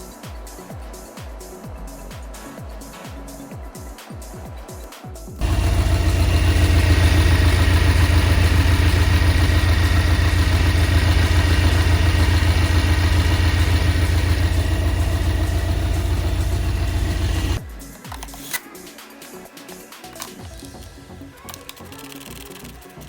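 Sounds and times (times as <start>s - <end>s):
car engine idling: 5.4s - 17.6s.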